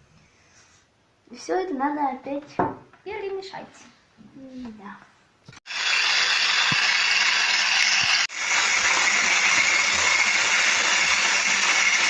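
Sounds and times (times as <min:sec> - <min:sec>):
electric hand mixer beating batter: 0:05.7 - 0:12.0.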